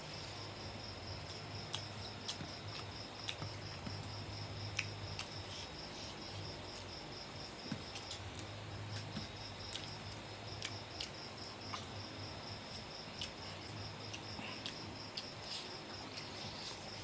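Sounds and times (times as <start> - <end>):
cricket chirping: 0.0 - 17.0
eating clicks and smacks: 1.2 - 6.1, 7.6 - 12.1, 12.7 - 17.0.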